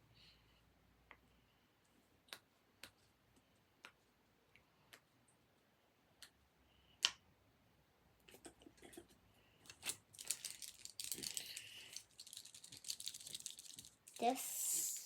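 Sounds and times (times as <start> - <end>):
plastic fidget toy rattling: 9.7 - 14.4.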